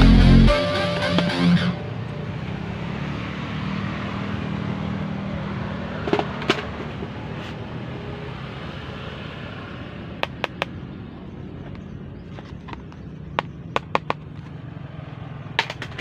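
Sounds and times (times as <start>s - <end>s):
low hum: 0.0s - 1.9s
sharp clicks: 10.2s - 10.8s.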